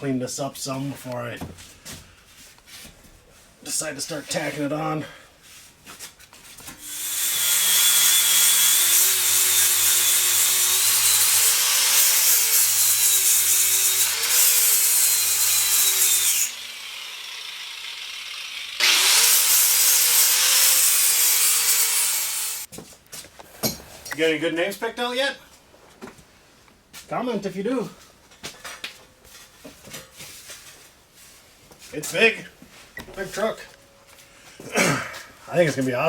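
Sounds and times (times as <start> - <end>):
wire wheel scrubbing steel: 6.9 - 17.8.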